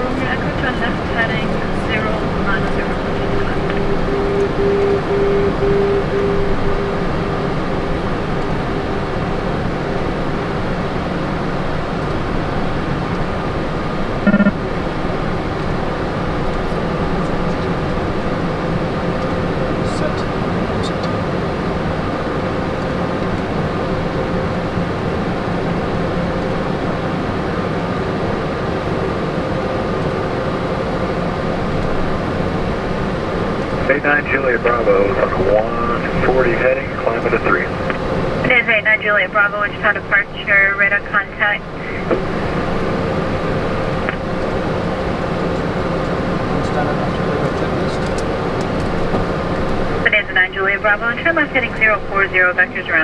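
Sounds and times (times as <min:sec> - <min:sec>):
airflow rush and jet hum: 0:00.0 - 0:53.0
faint steady whine: 0:00.0 - 0:53.0
short pulsing tone: 0:02.7 - 0:09.2, 0:14.2 - 0:14.8
electronic tone blip: 0:02.8 - 0:08.5, 0:14.2 - 0:14.7.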